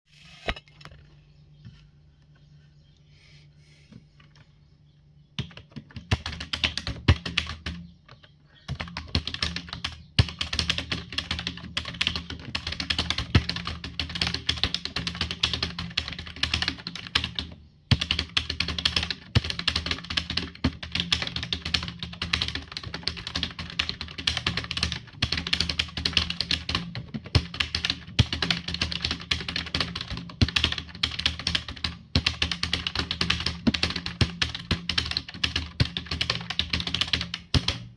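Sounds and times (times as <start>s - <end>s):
low steady hum: 0.1s - 14.3s
fast keyboard typing: 5.4s - 37.9s.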